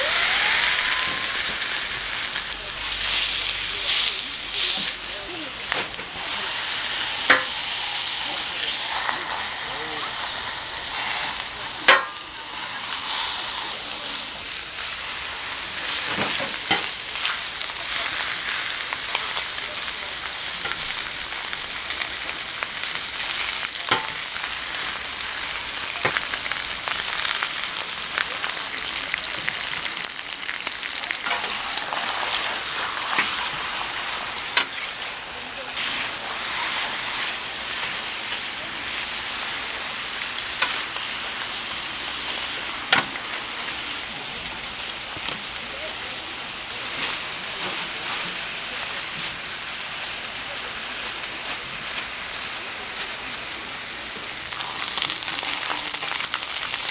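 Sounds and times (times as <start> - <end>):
offal sizzling on a griddle: 0.0 - 56.9.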